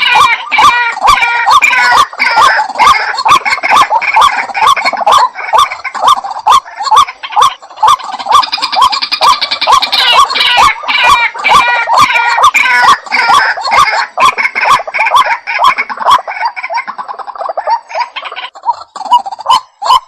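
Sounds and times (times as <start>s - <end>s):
bird chatter: 0.0s - 20.0s
waterhen calling: 0.0s - 20.0s.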